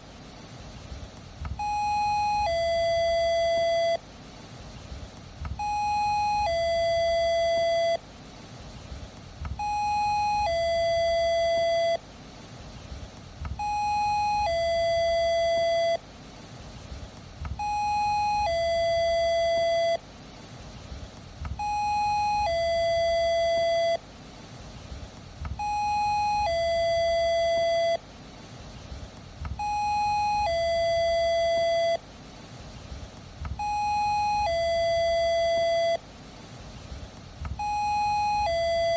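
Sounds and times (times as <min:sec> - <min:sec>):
faint low rumble: 0:00.0 - 0:38.9.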